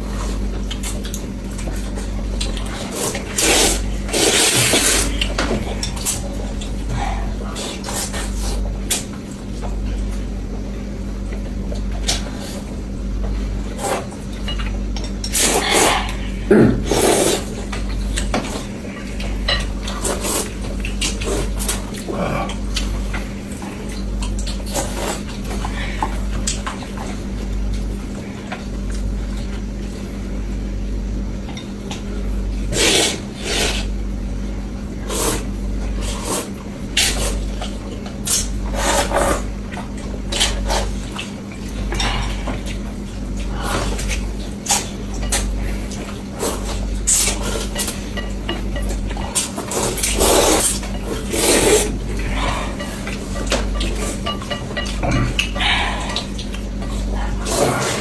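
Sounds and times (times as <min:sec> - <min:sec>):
noodle slurping: 0:32.7 - 0:33.9, 0:49.3 - 0:53.3, 0:55.3 - 0:58.0
utensils clicking against bowl: 0:43.9 - 0:57.6.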